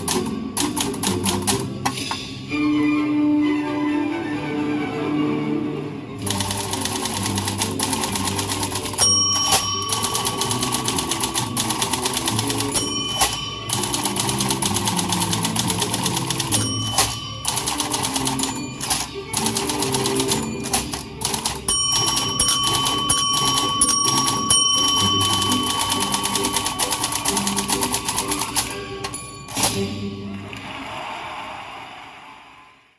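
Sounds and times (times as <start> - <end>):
low musical accompaniment: 0.0 - 30.6
typewriter keystroke clicks: 6.3 - 23.6
typewriter bell dings: 6.3 - 30.0.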